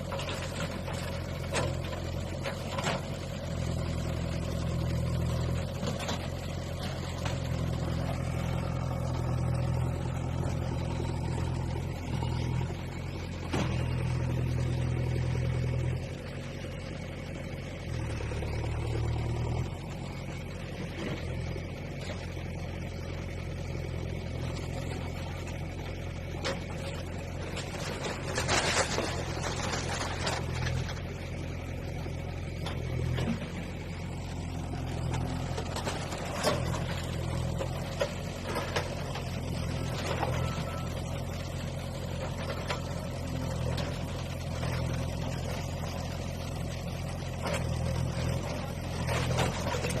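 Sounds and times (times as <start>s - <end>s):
bulldozer engine droning: 0.0s - 50.0s
demolition crashes and clatter: 26.4s - 31.1s, 35.5s - 40.8s, 47.5s - 50.0s.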